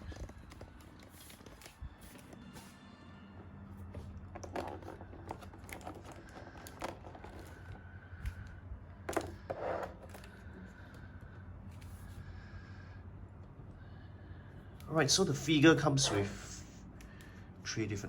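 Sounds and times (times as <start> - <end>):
steady low hum: 0.0 - 18.0.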